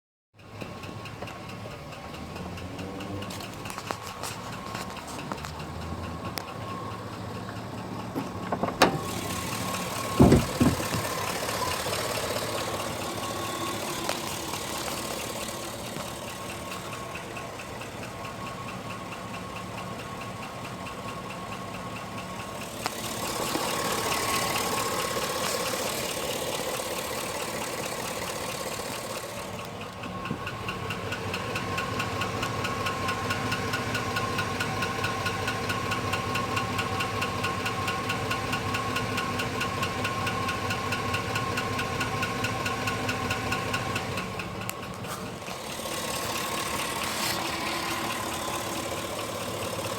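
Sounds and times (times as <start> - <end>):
knocking pickup engine idling: 0.4 - 49.9
loud thumps: 10.0 - 11.2.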